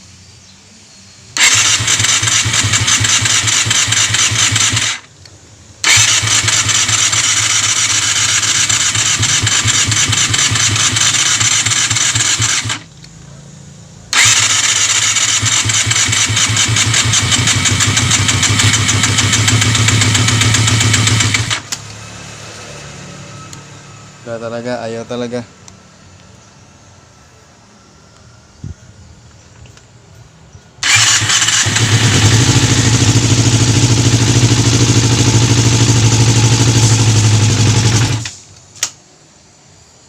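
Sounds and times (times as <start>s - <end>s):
engine starter cranking: 1.4s - 13.1s, 14.1s - 21.9s, 30.8s - 39.0s.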